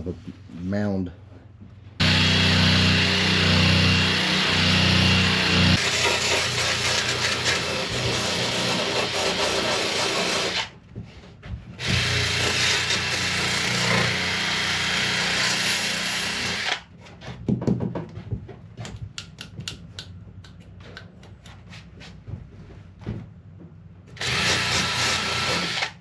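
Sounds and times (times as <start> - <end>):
drill spinning wire brush on plastic: 24.2 - 26.0.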